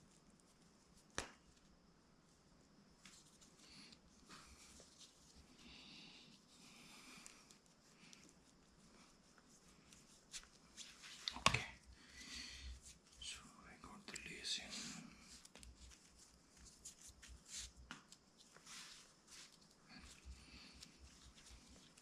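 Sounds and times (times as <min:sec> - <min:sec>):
lace rustling through sandal sole: 0:07.2 - 0:13.2, 0:15.2 - 0:22.0.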